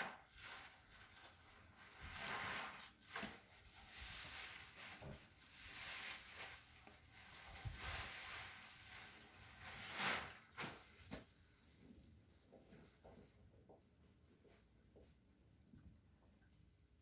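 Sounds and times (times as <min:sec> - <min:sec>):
faint scrubbing strokes: 0:03.7 - 0:10.5.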